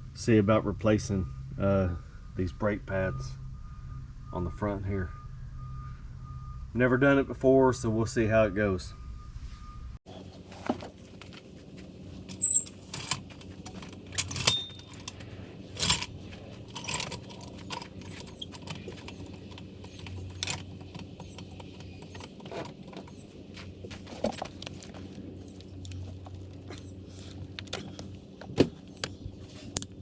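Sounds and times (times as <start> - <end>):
steady low hum: 10.0 - 30.0
metal tools clinking: 10.2 - 30.0.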